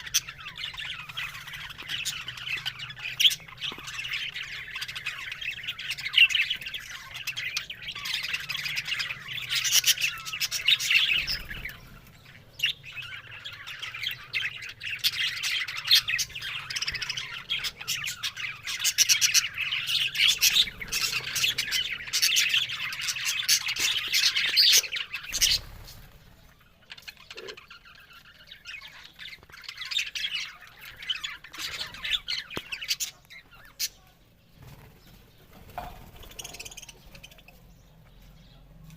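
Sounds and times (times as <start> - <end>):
budgerigars chattering: 0.0 - 34.0.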